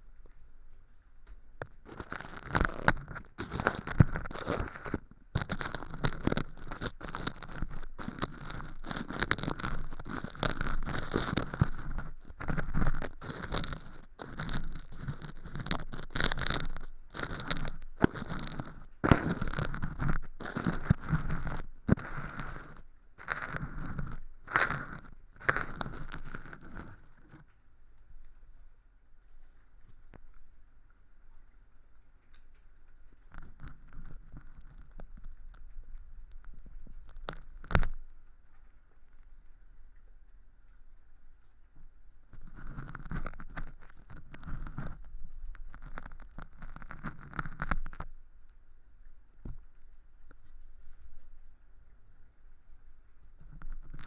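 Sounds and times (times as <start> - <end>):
ear pick scraping and crackling: 0.0 - 27.6, 32.4 - 38.6, 42.3 - 48.6, 53.4 - 54.0.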